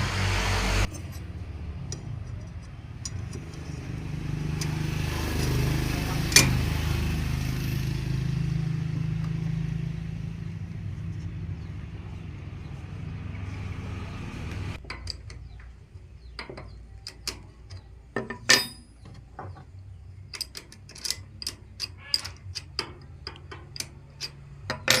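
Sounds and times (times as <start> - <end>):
low steady rumble: 0.0 - 25.0
metal parts clicking and clinking: 0.9 - 5.6, 14.8 - 15.7, 16.3 - 25.0.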